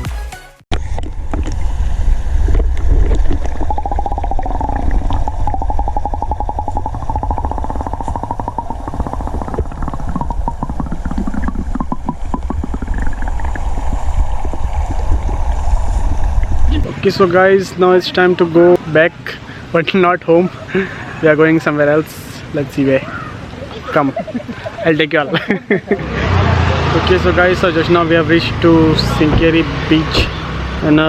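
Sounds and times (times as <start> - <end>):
wind rumble on microphone: 0.8 - 16.9.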